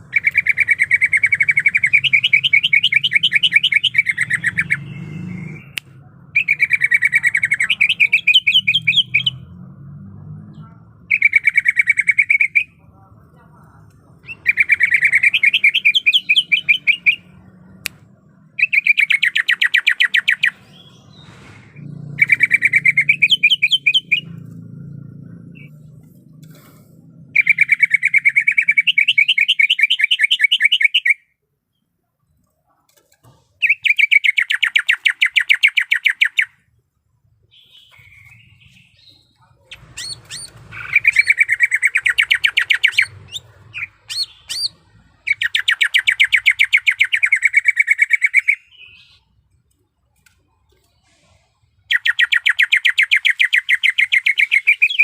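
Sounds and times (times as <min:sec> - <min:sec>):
bird chattering trills: 0:00.0 - 0:05.7, 0:11.1 - 0:12.7, 0:14.2 - 0:17.3, 0:22.2 - 0:24.6, 0:25.4 - 0:31.2, 0:33.6 - 0:36.6, 0:37.5 - 0:49.3, 0:51.9 - 0:55.0.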